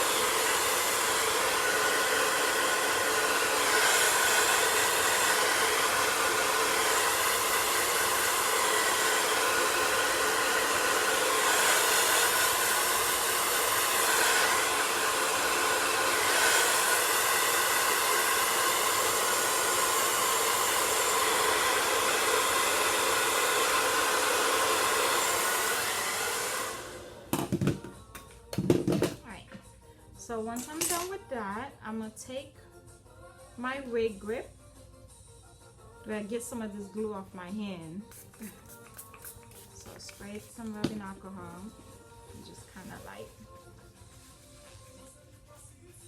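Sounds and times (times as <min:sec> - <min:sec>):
blow dryer running: 0:00.0 - 0:28.0.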